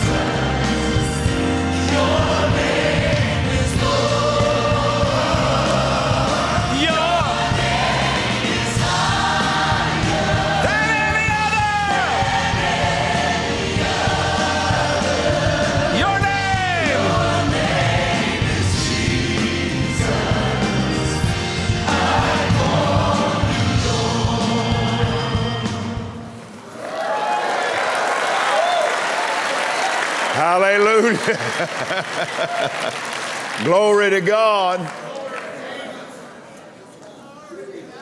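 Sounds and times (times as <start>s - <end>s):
choir and congregation singing: 0.0s - 27.4s.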